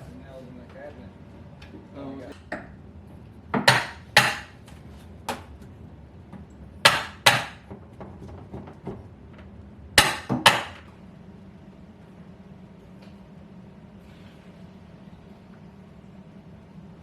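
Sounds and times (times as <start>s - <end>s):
hammer striking wooden cabinet: 3.6s - 4.6s, 6.8s - 7.8s, 10.0s - 10.9s.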